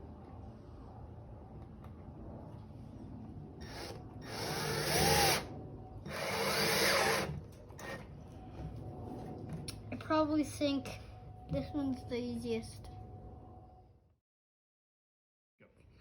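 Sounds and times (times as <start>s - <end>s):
drill driving screw into wood: 3.6s - 5.5s, 6.1s - 8.0s.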